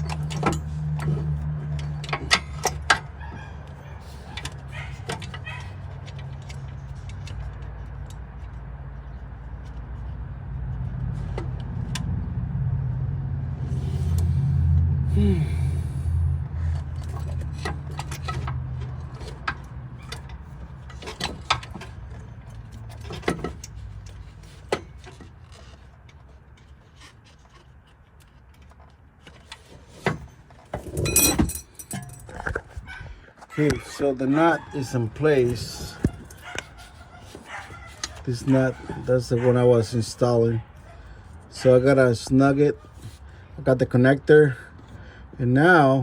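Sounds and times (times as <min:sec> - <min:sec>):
hand tools clinking on metal: 0:30.8 - 0:32.6.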